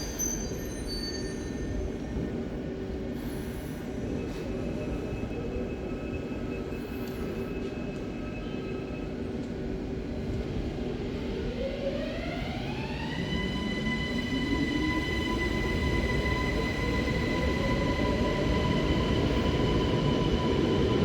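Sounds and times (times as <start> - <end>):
electric train rumble and hum: 0.0 - 21.0.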